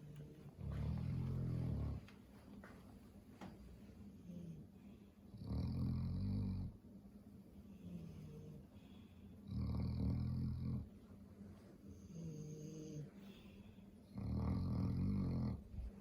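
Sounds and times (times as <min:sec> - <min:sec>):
dog snoring: 0:00.0 - 0:02.1, 0:05.3 - 0:06.8, 0:07.8 - 0:10.9, 0:11.9 - 0:15.9
dog breathing: 0:00.0 - 0:02.2.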